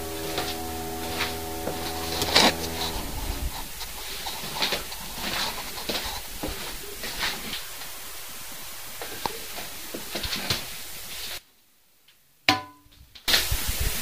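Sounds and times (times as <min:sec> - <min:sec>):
steady motor hum: 0:00.0 - 0:04.2.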